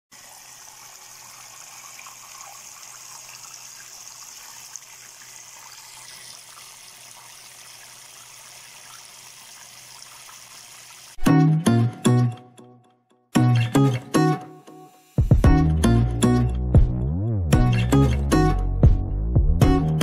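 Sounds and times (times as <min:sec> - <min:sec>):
water trickling down fountain: 0:00.1 - 0:11.2.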